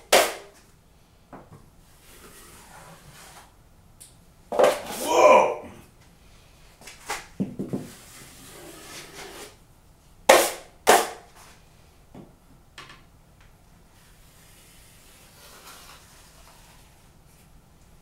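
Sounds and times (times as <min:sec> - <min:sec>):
taping knife scraping a mud pan: 0:07.9 - 0:09.6, 0:14.4 - 0:17.1.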